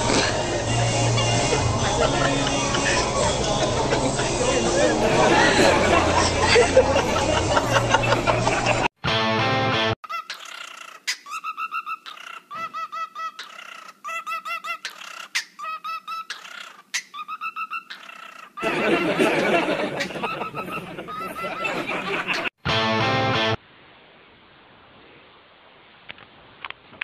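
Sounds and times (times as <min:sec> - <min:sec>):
bird chirping: 0:10.1 - 0:18.6.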